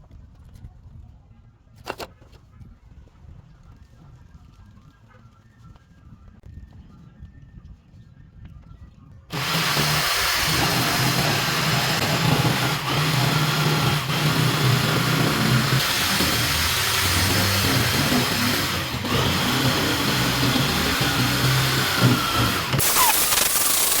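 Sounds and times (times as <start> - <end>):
power tool running: 9.3 - 24.0.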